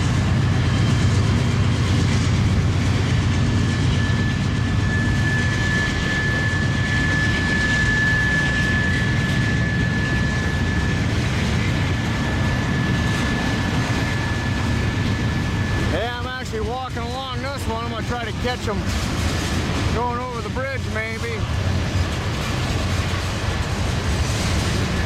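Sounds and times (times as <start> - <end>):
freight train rumbling by: 0.0 - 25.0
high steady squeal: 3.0 - 11.2.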